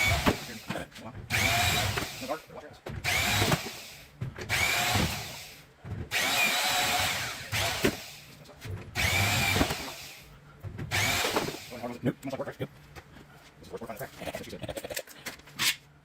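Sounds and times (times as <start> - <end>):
power drill running: 0.0 - 0.6, 1.3 - 2.4, 3.0 - 8.3, 9.0 - 10.3, 10.9 - 11.9.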